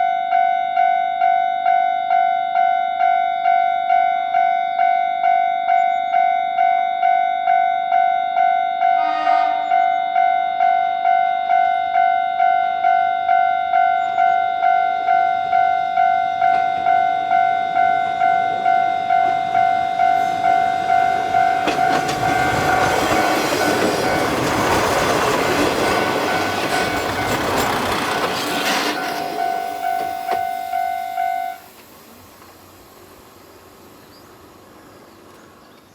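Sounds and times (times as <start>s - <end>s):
crossing warning bell ringing: 0.0s - 31.8s
diesel railcar passing: 0.0s - 35.9s
brief horn note: 8.8s - 10.0s.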